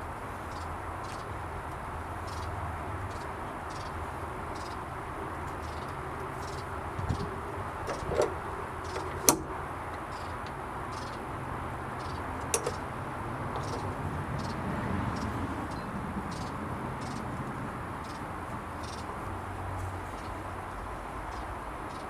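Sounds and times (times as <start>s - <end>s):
outdoor background noise: 0.0s - 22.0s
latch and tool clicks: 7.8s - 10.6s, 12.4s - 12.8s.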